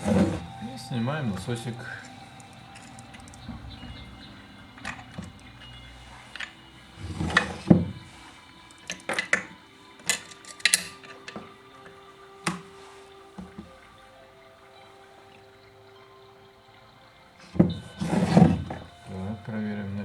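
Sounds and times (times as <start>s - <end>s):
faint steady hum: 0.0s - 20.0s
tools clicking and knocking: 8.7s - 12.6s.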